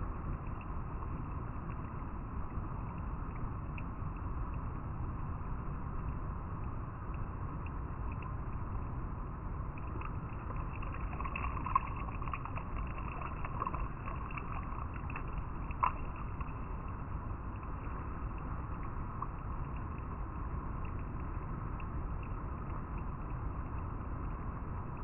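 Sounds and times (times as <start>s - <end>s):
water splashes: 9.6s - 23.1s
river water flowing over rocks: 9.6s - 23.6s.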